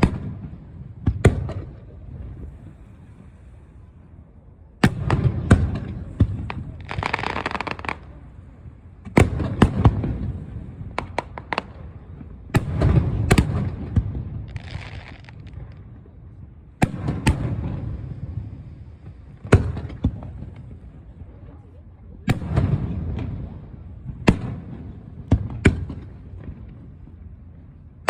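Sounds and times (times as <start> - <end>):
low rumbling echo: 0.0 - 28.0
firework shells bursting: 4.9 - 8.1.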